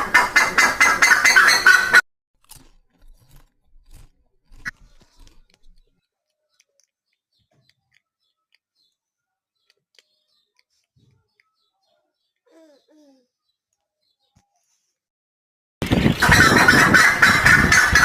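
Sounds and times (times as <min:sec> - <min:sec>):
soft crunching rustling clicks: 0:02.4 - 0:08.7.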